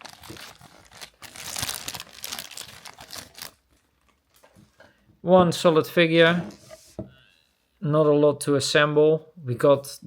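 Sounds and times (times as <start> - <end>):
plastic packaging crinkling: 0.0 - 4.7.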